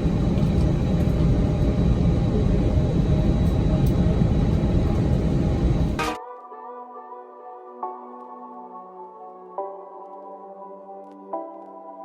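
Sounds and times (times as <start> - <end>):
jet airliner rumble: 0.0 - 6.0
soft ambient music: 0.0 - 12.0.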